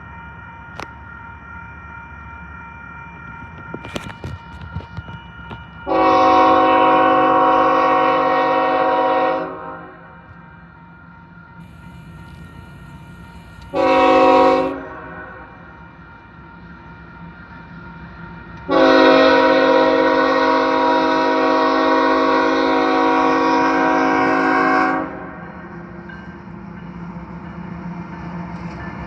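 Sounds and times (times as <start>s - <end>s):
train rumble: 0.0s - 29.0s
locomotive air horn chord: 5.9s - 10.1s, 13.7s - 15.6s, 18.7s - 25.4s.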